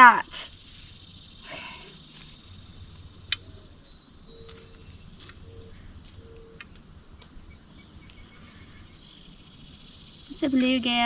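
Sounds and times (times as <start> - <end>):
faint insect trill: 0.0 - 11.0
sharp clicks: 2.9 - 3.5.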